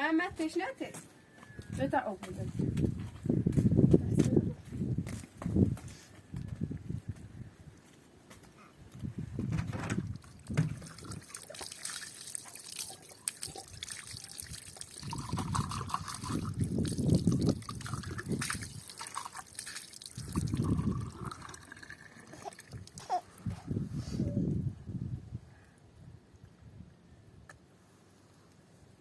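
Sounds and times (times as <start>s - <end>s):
water pouring and splashing: 9.7s - 23.4s.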